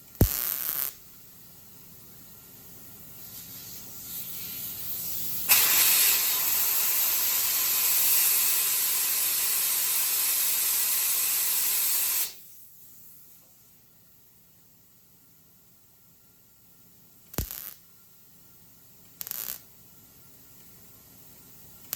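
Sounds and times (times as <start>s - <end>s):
gas hissing under pressure: 3.5s - 12.5s.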